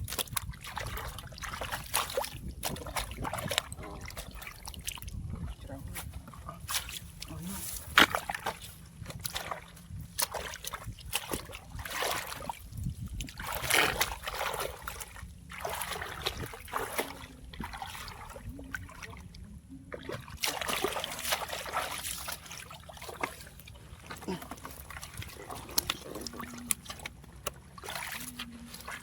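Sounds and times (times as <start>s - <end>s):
water splashing and sloshing: 0.0s - 29.0s.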